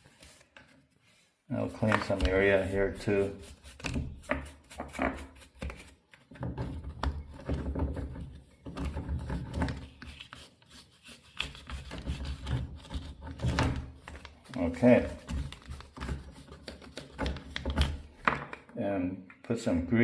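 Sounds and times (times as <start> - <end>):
toothbrush scrubbing: 1.8 - 6.0, 9.8 - 13.2.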